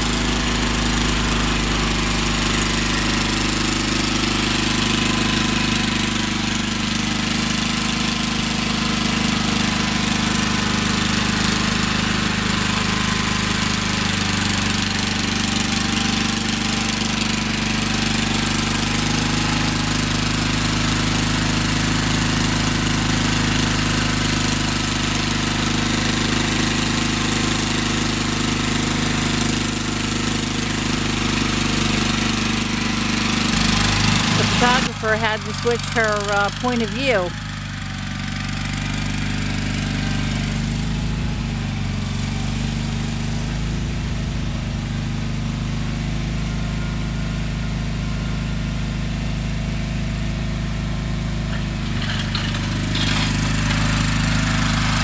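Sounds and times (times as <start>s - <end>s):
garden tractor engine running: 0.0s - 55.0s.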